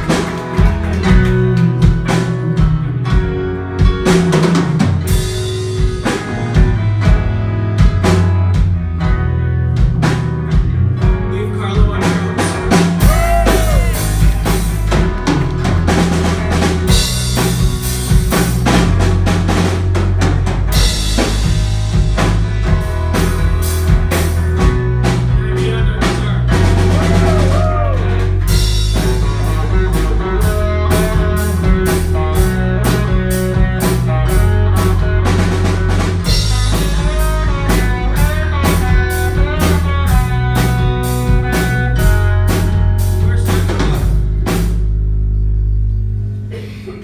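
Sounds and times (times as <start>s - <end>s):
drum kit beat: 0.0s - 45.1s
rock band playing: 0.0s - 46.6s.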